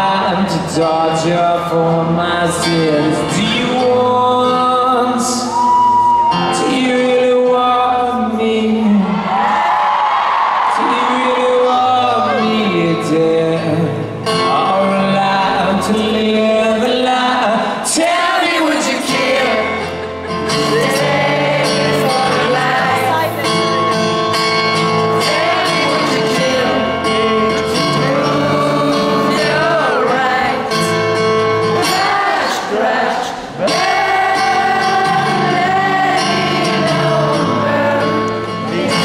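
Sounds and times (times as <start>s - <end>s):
acoustic guitar chords: 0.0s - 9.2s, 11.2s - 39.0s
person singing wordless melody: 10.9s - 39.0s.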